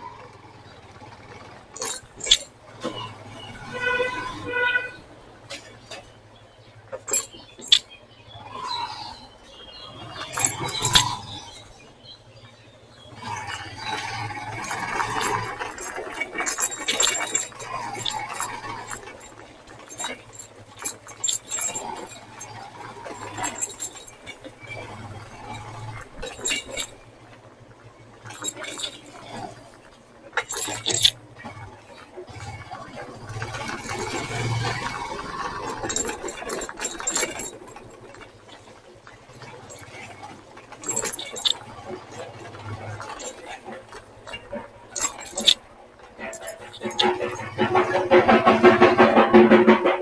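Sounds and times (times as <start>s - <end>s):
road traffic hum: 0.0s - 50.0s
sharp clicks and clinks: 1.7s - 3.0s, 6.9s - 8.0s, 10.1s - 11.7s, 13.2s - 27.0s, 28.2s - 29.6s, 30.4s - 31.6s, 33.3s - 38.8s, 39.4s - 50.0s.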